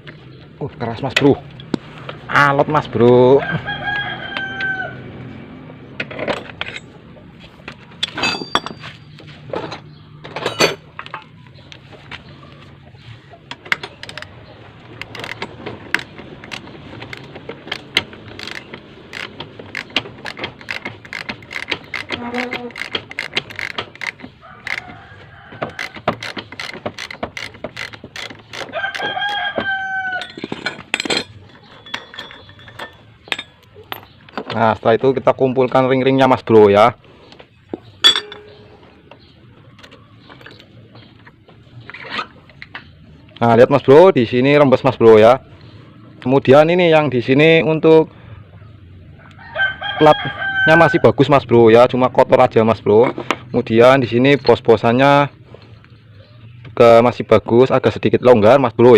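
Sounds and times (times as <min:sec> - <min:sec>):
rooster crowing: 0:03.3 - 0:05.3, 0:24.4 - 0:26.2, 0:28.6 - 0:30.4, 0:49.2 - 0:51.2
loose metal parts knocking: 0:13.4 - 0:34.6, 0:38.0 - 0:38.6
socket wrench clicking: 0:15.0 - 0:24.8, 0:25.8 - 0:29.4.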